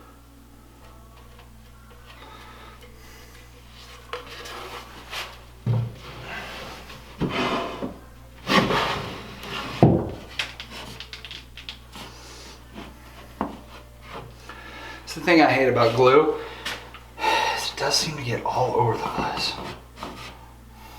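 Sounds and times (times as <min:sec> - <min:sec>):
wood pieces scraping: 0:06.0 - 0:12.1, 0:19.0 - 0:20.4
wood knocking on wood: 0:09.8 - 0:10.3.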